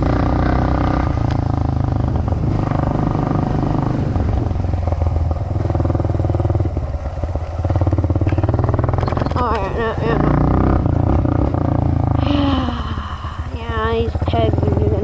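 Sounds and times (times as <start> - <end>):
dirt bike engine running: 0.0 - 15.0.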